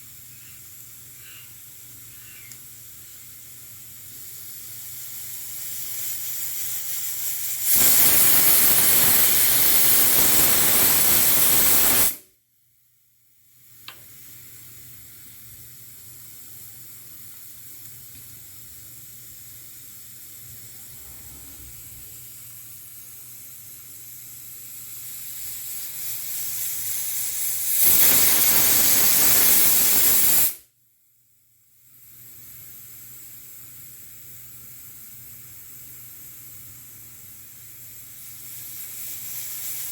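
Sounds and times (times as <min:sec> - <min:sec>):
pressure cooker whistle venting steam: 0:00.0 - 0:12.2, 0:23.1 - 0:30.6, 0:32.1 - 0:39.9.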